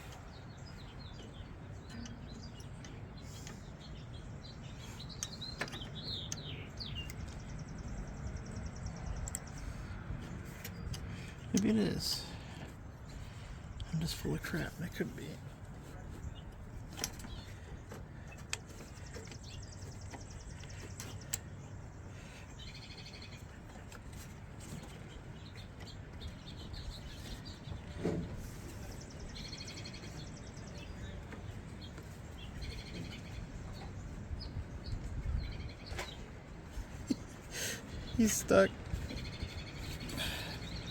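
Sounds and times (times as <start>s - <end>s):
birds chirping and trilling: 0.0s - 40.9s
low background hum: 0.0s - 40.9s.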